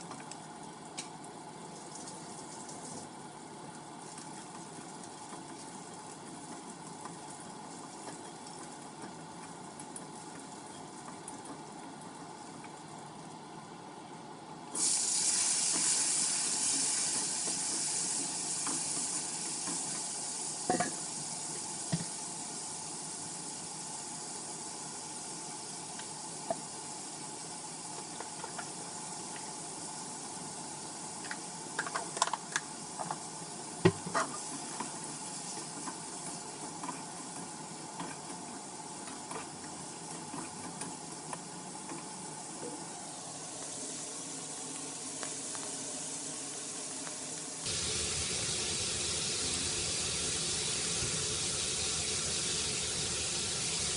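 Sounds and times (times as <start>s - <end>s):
food sizzling in oil: 14.8s - 28.0s, 47.6s - 53.9s.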